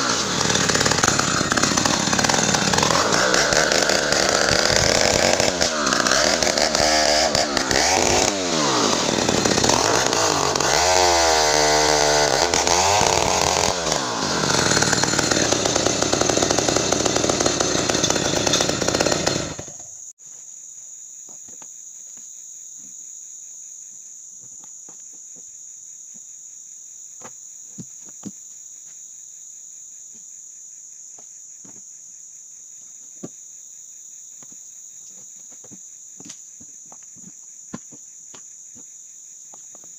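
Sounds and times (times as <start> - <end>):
chainsaw cutting wood: 0.0 - 20.0
high insect drone: 19.9 - 39.9.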